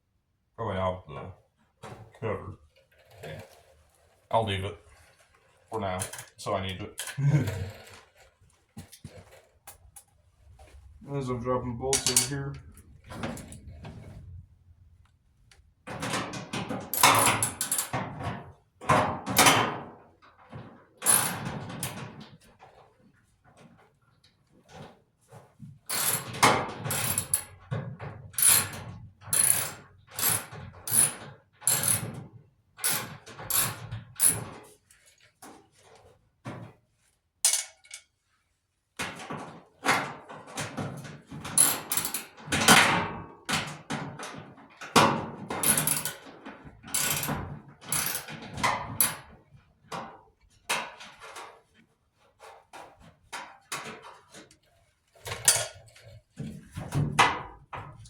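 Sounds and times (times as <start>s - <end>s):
tools and sheet metal clanking: 11.8s - 14.3s, 15.9s - 22.3s, 37.5s - 38.1s, 39.0s - 51.7s, 55.2s - 58.0s.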